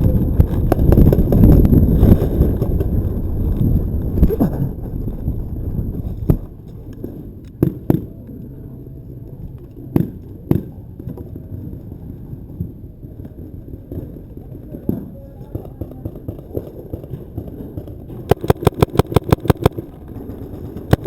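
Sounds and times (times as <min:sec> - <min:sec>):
microphone handling rumble: 0:00.0 - 0:06.8
paintball markers firing: 0:18.3 - 0:20.0.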